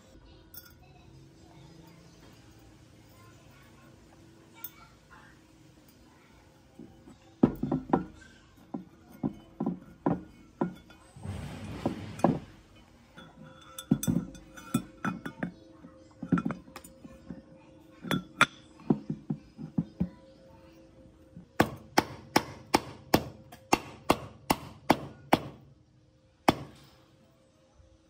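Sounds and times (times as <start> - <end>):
metal tools clinking: 0.5 - 1.0, 7.1 - 19.9.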